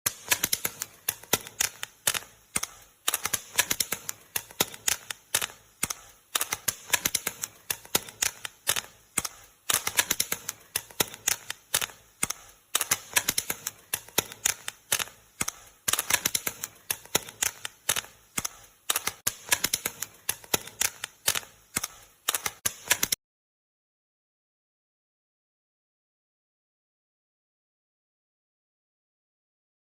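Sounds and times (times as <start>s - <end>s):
popcorn kernels popping: 0.1s - 23.2s.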